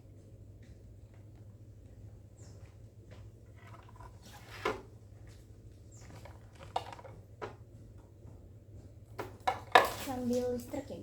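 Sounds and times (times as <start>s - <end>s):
objects clicking and knocking: 9.2s - 10.5s.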